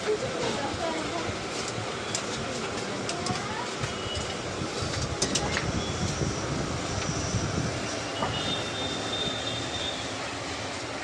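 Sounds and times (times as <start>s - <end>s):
clicks of handled parts: 4.9s - 5.7s.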